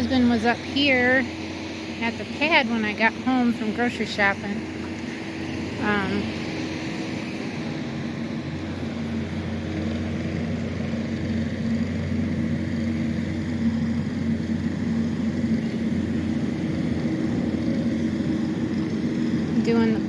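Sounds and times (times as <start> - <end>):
heavy machine engine humming: 0.0 - 20.0.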